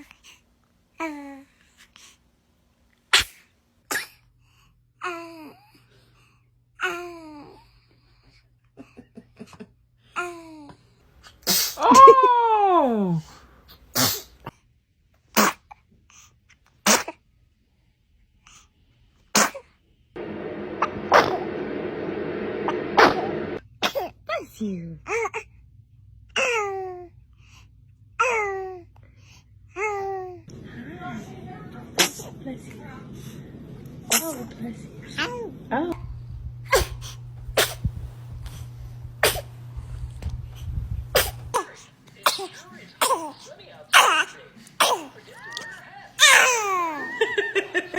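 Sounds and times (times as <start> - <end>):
baby sneezing: 3.1 - 4.2, 11.4 - 12.2, 13.9 - 14.5, 15.3 - 15.8, 16.8 - 17.2, 19.3 - 19.7, 23.8 - 24.2, 36.7 - 37.9, 39.2 - 39.5, 41.2 - 45.2, 46.2 - 47.0.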